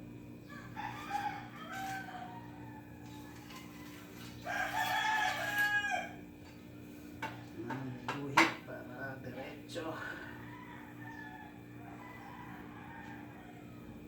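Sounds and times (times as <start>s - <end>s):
steady low hum: 0.0s - 4.8s, 6.0s - 14.0s
rooster crowing: 0.4s - 6.3s, 10.2s - 14.0s.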